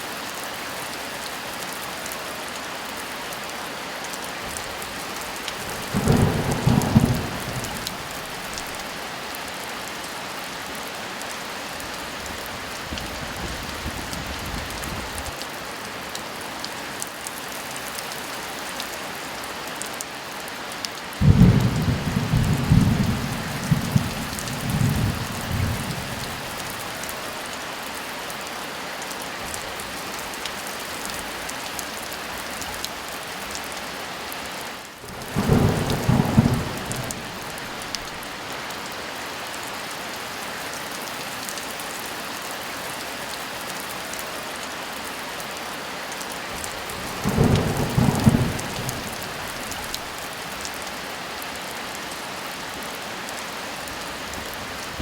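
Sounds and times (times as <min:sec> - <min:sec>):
heavy rain: 0:00.0 - 0:55.0
low rumbles of thunder: 0:05.6 - 0:08.8, 0:21.2 - 0:26.8, 0:35.1 - 0:38.2, 0:47.0 - 0:50.1.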